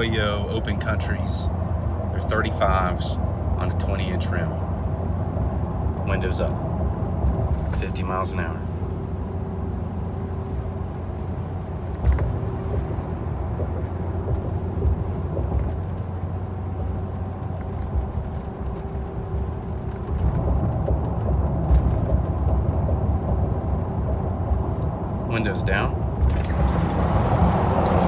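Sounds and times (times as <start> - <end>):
car cabin road rumble: 0.0 - 28.0
faint tyre hum: 0.0 - 28.0.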